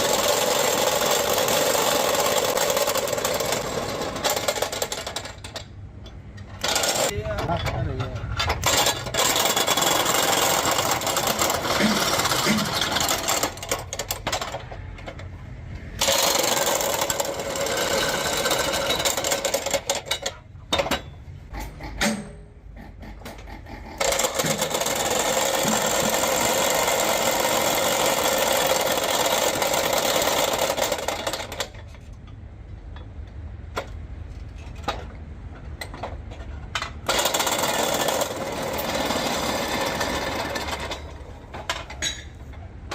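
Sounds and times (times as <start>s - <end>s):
loud rapid power tool: 0.0s - 4.9s, 24.0s - 31.4s, 37.1s - 41.0s.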